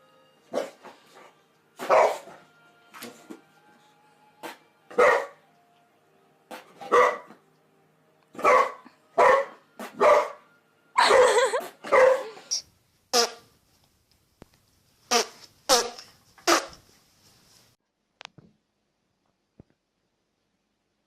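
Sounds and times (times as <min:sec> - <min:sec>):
dog barking: 0:00.5 - 0:00.8, 0:01.8 - 0:02.4, 0:04.9 - 0:05.4, 0:06.8 - 0:07.4, 0:08.4 - 0:10.4, 0:11.0 - 0:12.4.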